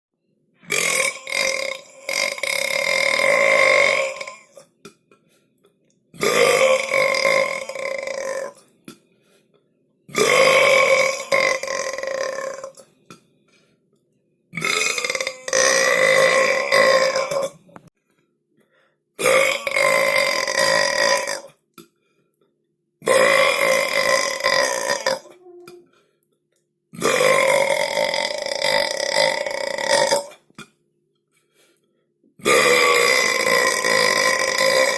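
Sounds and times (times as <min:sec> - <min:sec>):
person belching: 0:00.6 - 0:04.9, 0:06.2 - 0:08.7, 0:10.1 - 0:12.9, 0:14.5 - 0:17.9, 0:19.2 - 0:21.6, 0:23.0 - 0:25.9, 0:26.9 - 0:30.8, 0:32.4 - 0:34.9.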